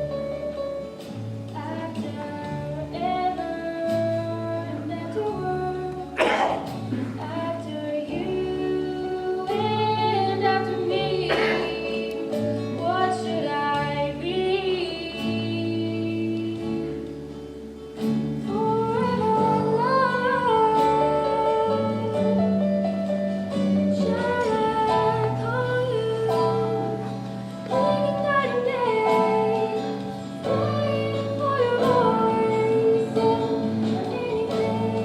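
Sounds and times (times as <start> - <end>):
singing voices: 1.6 - 17.0, 23.6 - 35.0.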